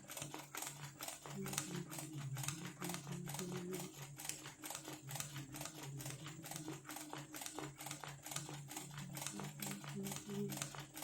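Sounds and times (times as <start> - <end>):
sewing machine motor hum: 0.0 - 11.0
sewing machine needle clicking: 0.0 - 11.0.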